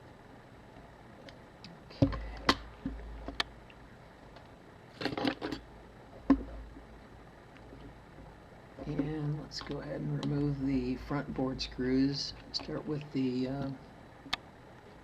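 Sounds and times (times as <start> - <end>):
clatter of metal parts: 4.9 - 5.6.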